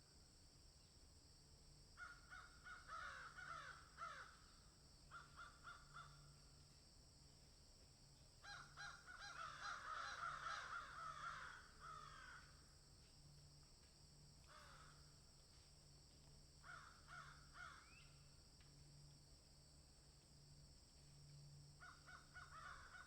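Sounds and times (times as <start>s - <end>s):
crows cawing: 2.0s - 4.5s, 5.1s - 6.3s, 8.4s - 12.7s, 14.4s - 15.1s, 16.6s - 18.0s, 21.8s - 23.0s.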